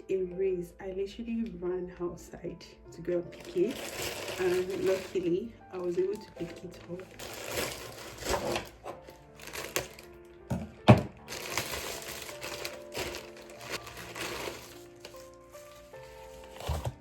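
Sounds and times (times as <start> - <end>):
soft piano music: 0.0 - 17.0
plastic parcel crinkling and tearing: 3.3 - 10.2, 11.2 - 17.0.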